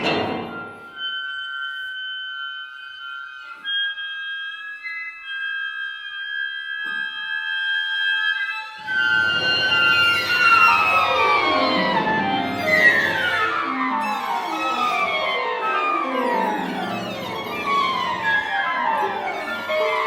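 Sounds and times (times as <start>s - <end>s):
chamber ensemble playing: 8.8s - 20.0s
downward-sliding glissandi: 8.8s - 20.0s.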